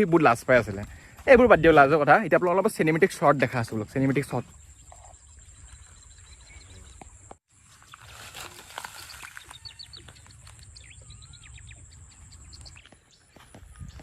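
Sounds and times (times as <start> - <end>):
birds chirping: 0.0 - 14.0
wind rumbling on microphone: 9.1 - 14.0.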